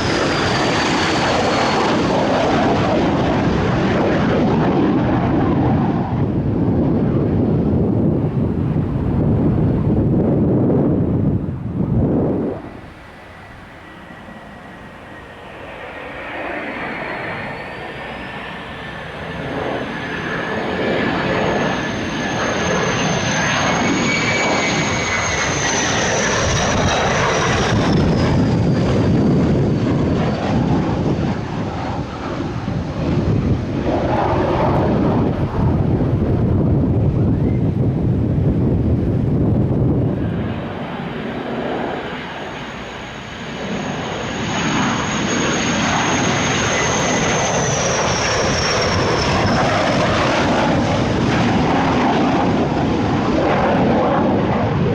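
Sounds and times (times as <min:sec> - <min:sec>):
jet engine rumble: 0:00.0 - 0:54.9
jet engine whine: 0:00.0 - 0:54.9.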